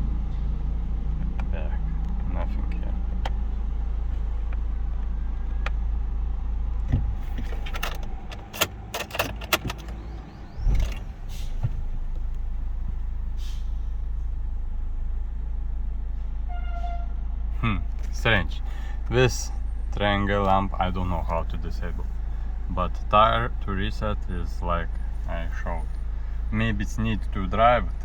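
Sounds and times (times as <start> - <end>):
car cabin rumble: 0.9 - 28.0
sharp clicks and knocks: 6.8 - 10.0.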